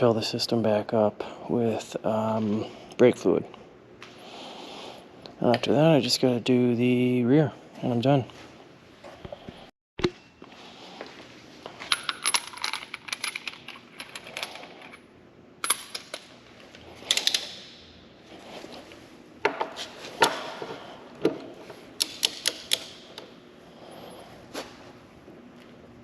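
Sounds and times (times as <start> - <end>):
metal tools clinking: 11.8 - 15.0.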